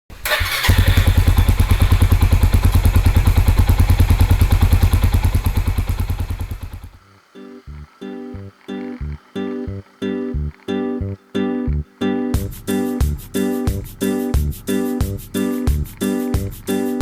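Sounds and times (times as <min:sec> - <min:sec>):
small engine starting and idling: 0:00.1 - 0:07.0
acoustic guitar music: 0:07.0 - 0:17.0.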